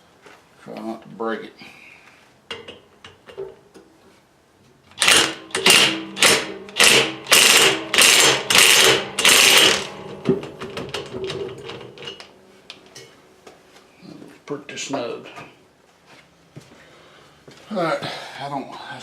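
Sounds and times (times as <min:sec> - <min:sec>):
impact wrench hammering: 0:05.0 - 0:12.2.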